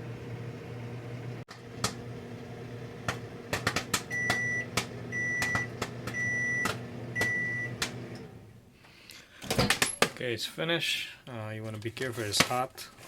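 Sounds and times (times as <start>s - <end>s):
microwave oven humming: 0.0s - 8.7s
popcorn popping in a paper bag: 3.0s - 6.8s
high microwave beeps: 4.1s - 7.8s.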